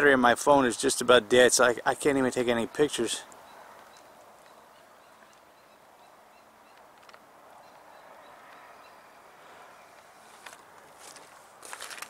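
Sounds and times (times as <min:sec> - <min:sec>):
distant bird calling: 0:03.2 - 0:10.4.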